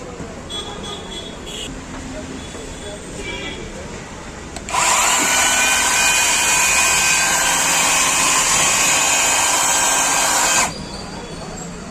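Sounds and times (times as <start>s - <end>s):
battery chainsaw whining: 4.6s - 10.8s.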